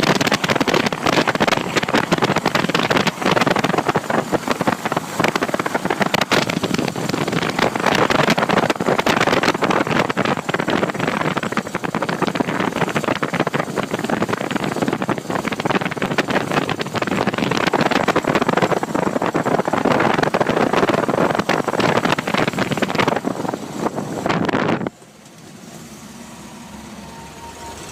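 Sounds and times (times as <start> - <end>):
fast ticking clatter: 0.0 - 25.0
car engine running: 0.0 - 27.9.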